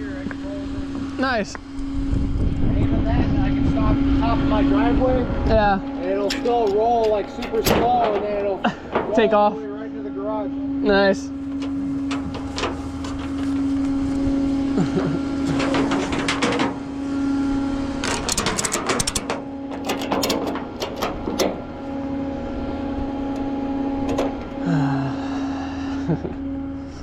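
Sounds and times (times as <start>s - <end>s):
tow truck humming: 0.0s - 27.0s
clicks and clatter: 11.5s - 14.0s, 15.4s - 16.8s, 18.0s - 21.6s.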